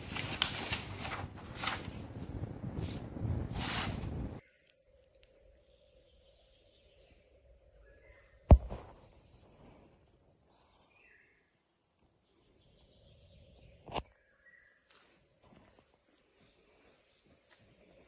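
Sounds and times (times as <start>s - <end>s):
faint bird chirps: 4.2s - 18.0s
sharp knock: 8.5s - 9.0s.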